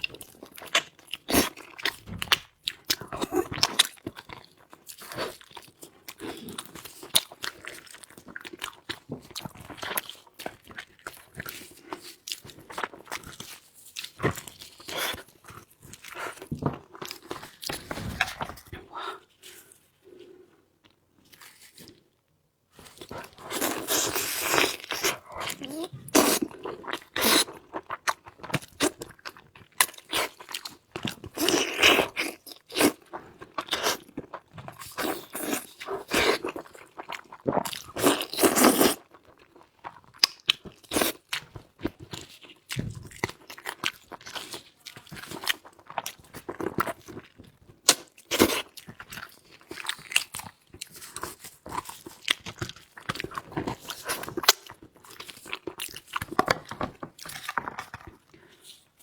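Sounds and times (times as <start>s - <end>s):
person chewing crunchy food: 0.0s - 22.2s, 22.8s - 59.0s.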